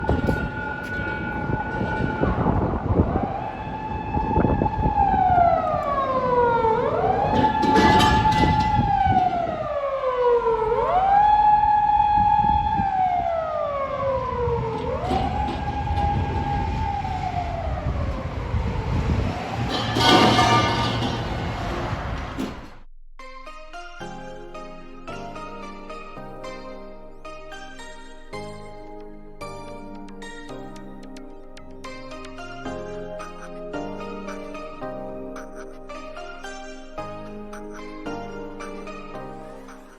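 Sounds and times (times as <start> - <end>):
electronic siren wailing: 0.0 - 19.8
vehicle rumble: 13.4 - 22.8.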